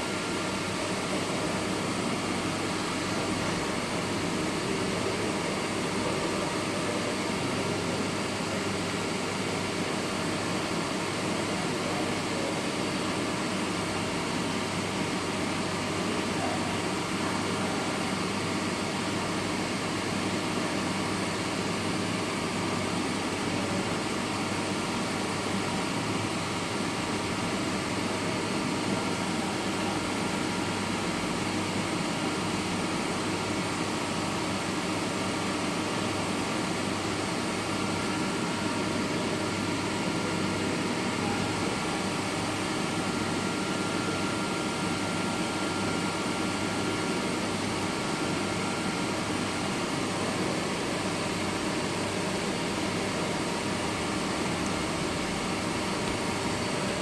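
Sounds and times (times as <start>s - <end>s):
machine hum with high whine: 0.0s - 57.0s.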